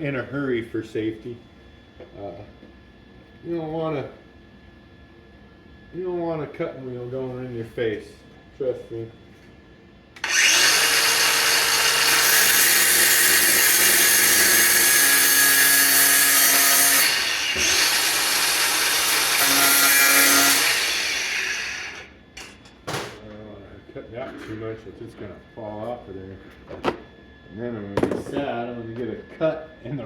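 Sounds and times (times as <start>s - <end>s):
grinder cutting steel: 10.2s - 22.1s.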